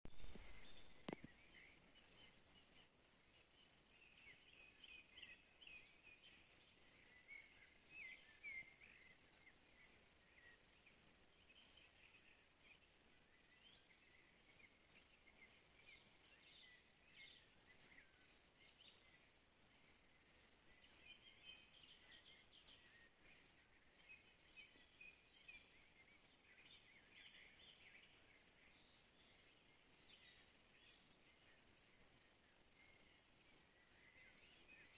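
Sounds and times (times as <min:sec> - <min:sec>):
short bird chirps: 0:00.1 - 0:02.9
cricket chirping: 0:00.1 - 0:34.9.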